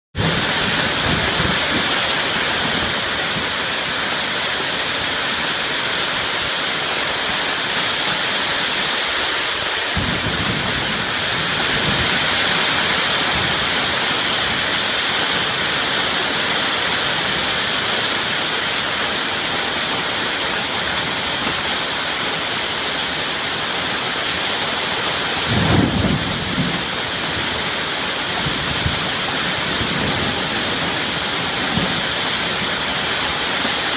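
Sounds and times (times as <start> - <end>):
heavy rain falling: 0.1 - 33.9
low thunder rumbles: 0.2 - 4.0, 9.9 - 19.9, 25.2 - 33.9.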